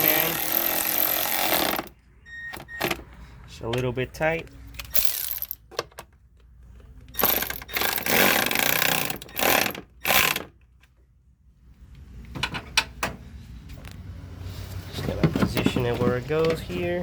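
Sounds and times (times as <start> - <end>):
hand ratchet clicking: 0.0 - 1.9, 4.8 - 5.6, 7.2 - 10.5.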